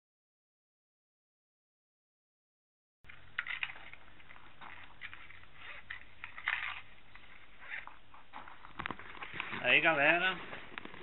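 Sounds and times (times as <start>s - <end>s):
faint rustling: 3.1s - 11.0s.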